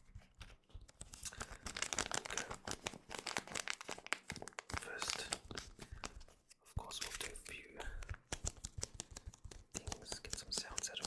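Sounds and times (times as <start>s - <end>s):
foil wrapper crinkling: 0.9s - 6.2s
foil wrapper tearing: 1.0s - 6.1s.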